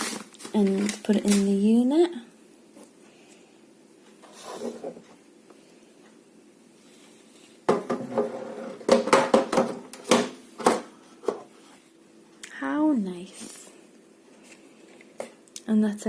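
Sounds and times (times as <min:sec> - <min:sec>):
hard plastic parts knocking: 0:07.7 - 0:10.9.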